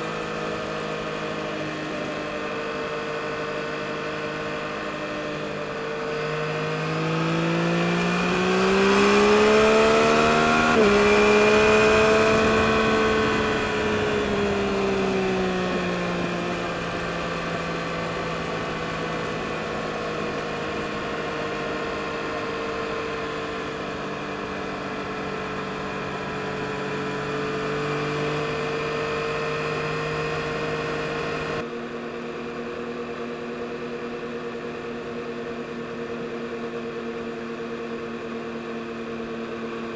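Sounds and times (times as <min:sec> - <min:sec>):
motorcycle engine pulling hard: 0:00.0 - 0:31.7.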